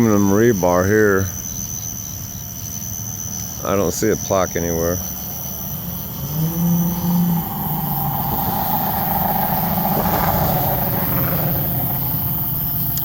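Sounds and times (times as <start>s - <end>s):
car passing: 4.5s - 13.0s.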